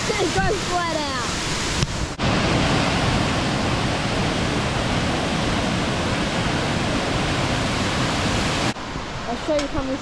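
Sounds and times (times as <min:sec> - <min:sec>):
waterfall rushing: 0:00.0 - 0:09.4.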